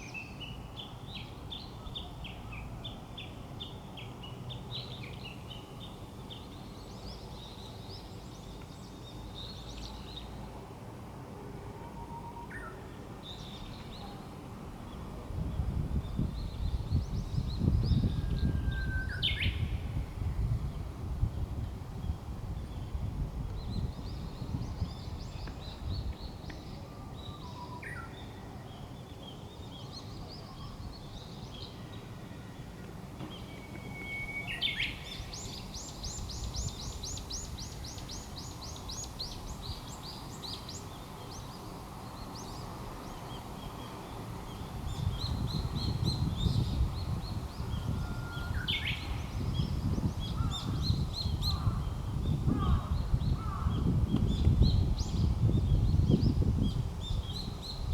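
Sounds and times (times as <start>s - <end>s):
bird whistling song: 17.9s - 19.8s, 33.4s - 38.1s.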